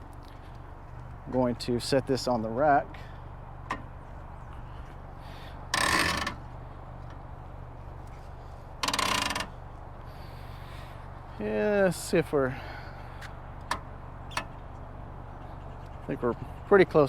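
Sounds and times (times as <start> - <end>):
bike rack ratcheting clicks: 5.7 - 6.5, 8.8 - 9.6.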